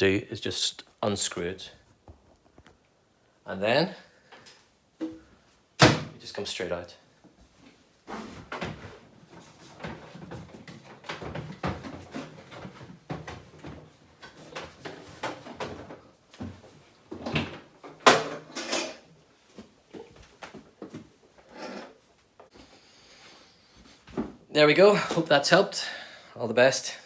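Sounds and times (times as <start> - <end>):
appliance scraping against cabinet: 21.5 - 22.0.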